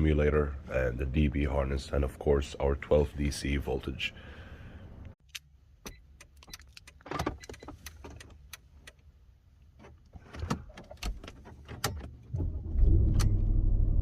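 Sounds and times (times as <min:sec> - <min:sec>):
keys and tools clicking: 0:05.3 - 0:09.0.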